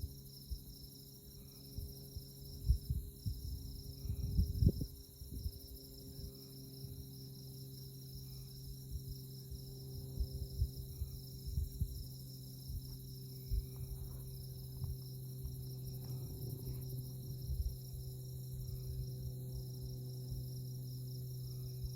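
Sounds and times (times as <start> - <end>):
night insects chirping: 0.0 - 21.9
low rumbles: 10.2 - 21.9.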